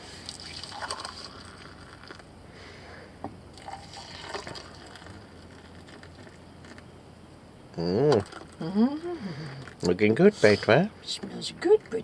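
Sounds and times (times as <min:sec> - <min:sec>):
faint liquid sounds: 0:00.0 - 0:02.4, 0:03.5 - 0:07.0.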